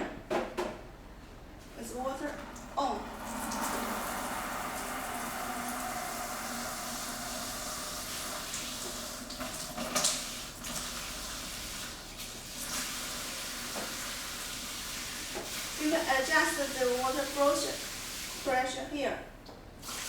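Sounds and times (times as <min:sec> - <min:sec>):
water spraying from shower head: 0:02.8 - 0:18.6.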